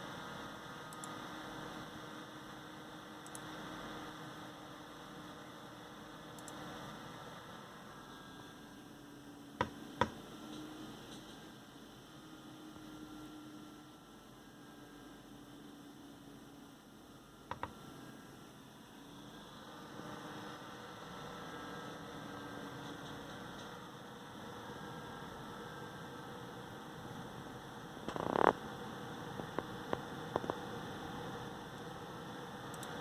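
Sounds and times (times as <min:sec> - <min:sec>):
sharp clicks: 0:06.4 - 0:06.6, 0:32.7 - 0:33.0
cpu cooler fan humming: 0:07.9 - 0:11.9, 0:17.4 - 0:18.4, 0:21.3 - 0:33.0.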